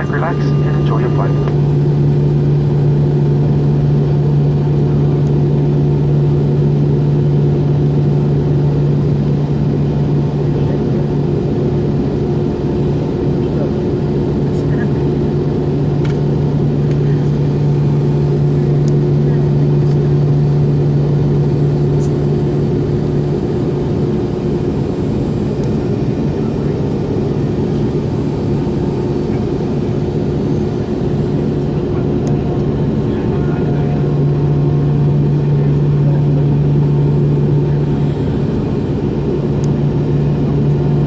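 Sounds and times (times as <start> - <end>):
low steady hum: 0.0 - 1.8
aircraft cabin engine drone: 0.0 - 41.0.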